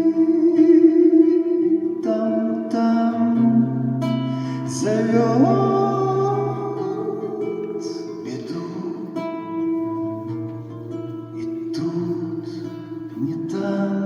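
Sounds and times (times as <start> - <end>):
acoustic guitar playing: 0.0 - 14.0
man singing long notes: 0.0 - 14.0.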